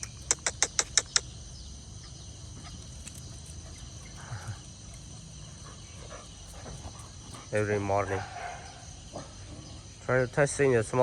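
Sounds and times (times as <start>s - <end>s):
sharp clicks: 0.0s - 1.3s
crickets chirping: 0.0s - 11.0s.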